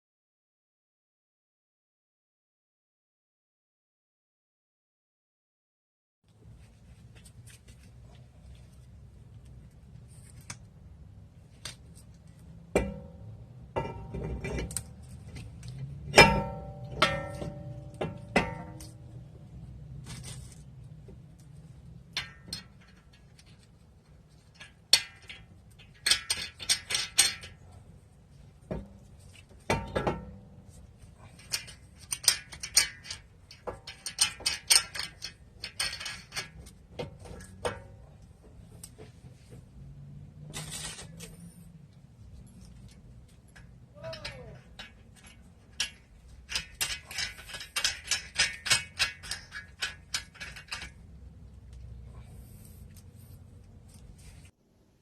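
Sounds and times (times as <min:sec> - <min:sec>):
sharp ringing knocks: 0:16.2 - 0:18.8
metal tools clanking: 0:42.4 - 0:51.1.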